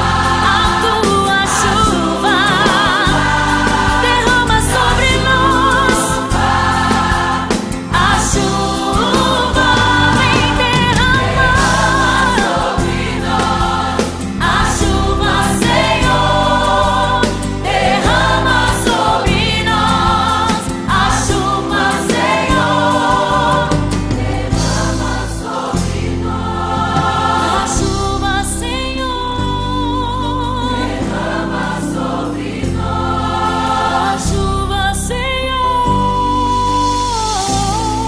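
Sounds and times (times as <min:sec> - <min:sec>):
band with bass and drums: 0:00.0 - 0:28.2
gospel choir singing: 0:00.0 - 0:37.8.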